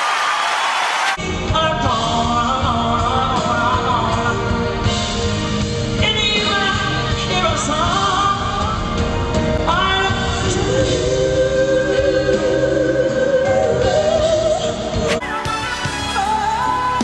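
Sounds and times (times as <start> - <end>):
person singing with vibrato: 1.2 - 4.8, 9.7 - 17.0
live band accompaniment: 1.2 - 17.0.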